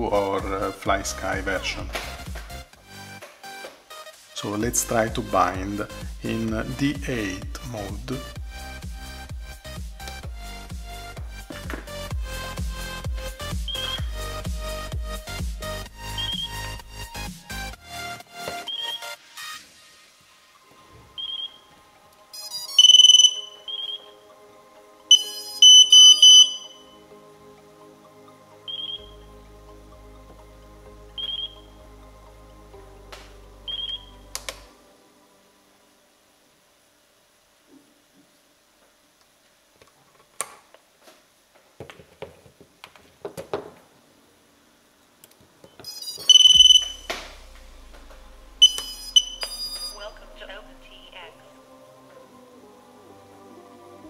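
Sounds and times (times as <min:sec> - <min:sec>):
faint background music: 0:00.0 - 0:39.2, 0:45.8 - 0:54.0
electronic beeps: 0:13.6 - 0:14.1, 0:16.0 - 0:16.7, 0:18.6 - 0:19.2, 0:21.2 - 0:21.7, 0:22.4 - 0:24.2, 0:25.1 - 0:27.0, 0:28.7 - 0:29.2, 0:31.2 - 0:31.8, 0:33.7 - 0:34.2, 0:45.7 - 0:47.1, 0:48.5 - 0:50.4
brief electronic chirp: 0:13.7 - 0:14.1, 0:16.1 - 0:16.6, 0:18.7 - 0:19.1, 0:22.4 - 0:24.2, 0:25.1 - 0:26.9, 0:28.7 - 0:29.2, 0:31.2 - 0:31.7, 0:45.9 - 0:47.1, 0:48.6 - 0:50.1
low hum: 0:46.3 - 0:54.0.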